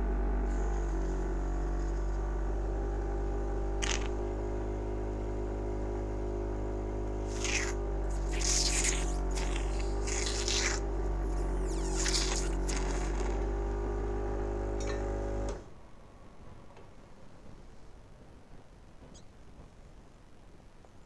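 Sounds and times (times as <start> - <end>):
machine humming: 0.0 - 15.6
hissing slurping suction: 3.8 - 4.1, 7.2 - 13.6.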